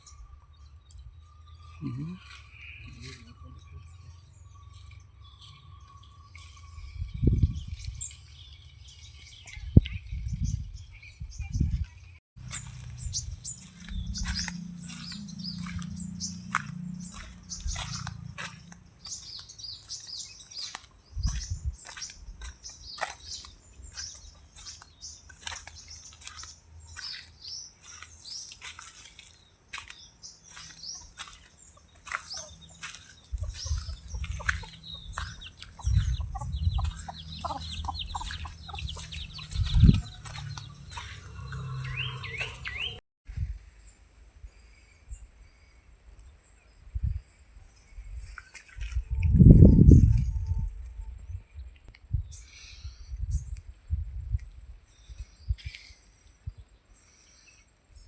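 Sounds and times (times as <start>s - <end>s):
birds chirping: 0.0s - 6.6s, 12.4s - 43.0s.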